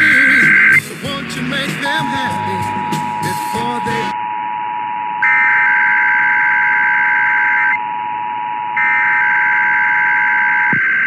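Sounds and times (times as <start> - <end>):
warbling digital data screech: 0.0 - 0.8.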